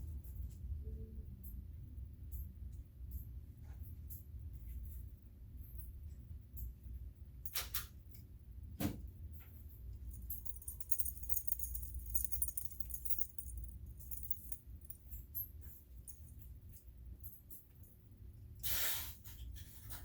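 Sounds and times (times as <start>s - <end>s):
metal objects jingling: 9.7s - 18.1s.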